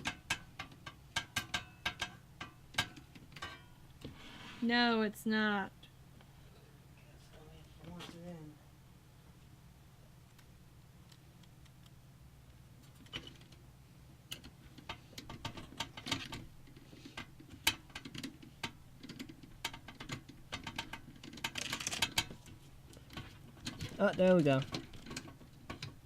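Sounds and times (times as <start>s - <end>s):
hands clicking and tapping on pc case: 0.0s - 3.6s, 14.3s - 26.0s.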